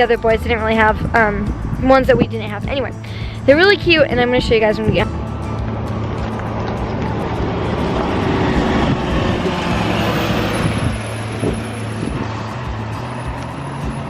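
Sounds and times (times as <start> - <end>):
bus engine humming: 0.0 - 14.0
road noise: 0.0 - 14.0.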